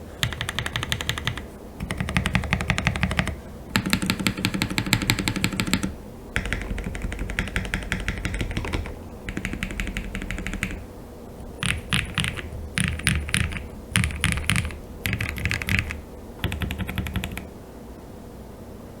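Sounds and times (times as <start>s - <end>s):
mechanical keyboard typing: 0.0s - 10.8s, 11.4s - 17.5s.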